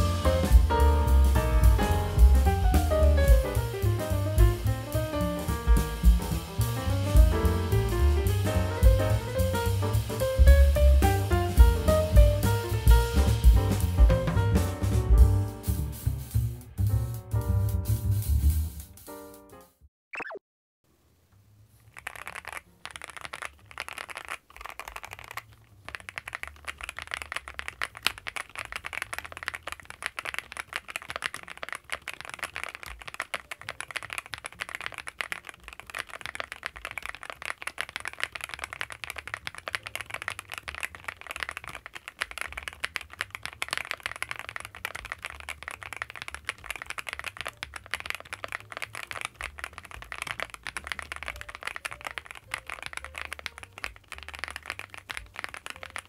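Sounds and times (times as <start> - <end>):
mechanical keyboard typing: 22.0 - 56.0.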